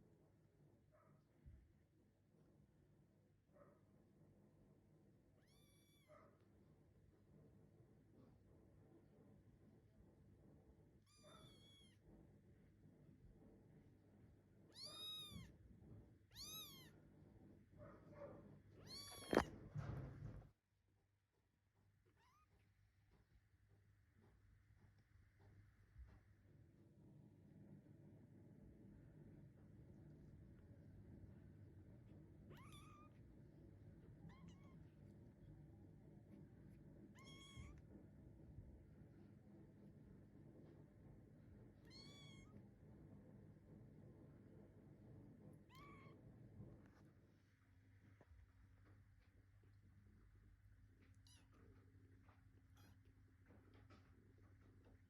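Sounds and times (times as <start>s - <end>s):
kitten meowing: 5.4s - 6.1s, 11.1s - 12.0s, 14.7s - 15.5s, 16.3s - 16.9s, 18.8s - 19.5s, 32.5s - 33.2s, 34.2s - 34.9s, 37.1s - 37.8s, 41.8s - 42.5s, 45.7s - 46.2s, 51.2s - 51.6s.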